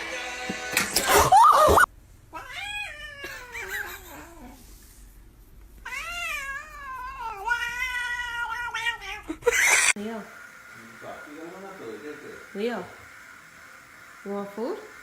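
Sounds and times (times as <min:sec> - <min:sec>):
cat meowing: 0:02.3 - 0:04.5, 0:05.8 - 0:09.9.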